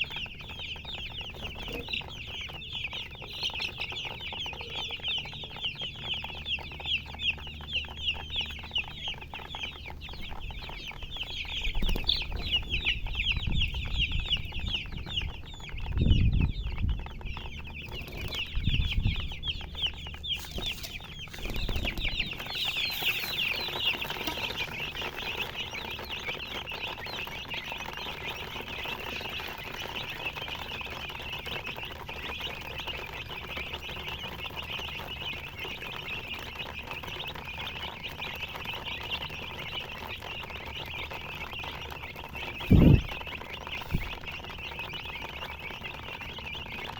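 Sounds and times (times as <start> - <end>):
low thumps and rumbles: 0.0 - 31.2, 42.2 - 45.4
baby chicks peeping: 0.0 - 46.9.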